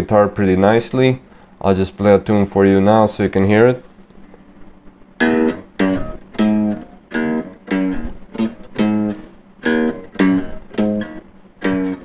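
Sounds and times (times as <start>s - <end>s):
guitar strummed chords: 5.2s - 12.0s.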